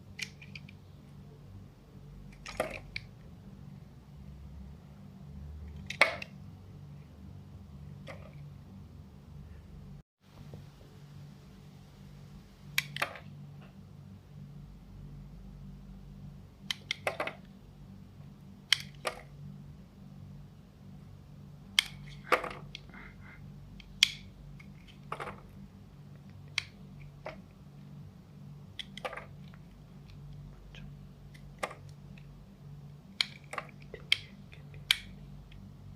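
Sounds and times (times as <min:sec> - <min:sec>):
low hum: 0:00.0 - 0:35.9.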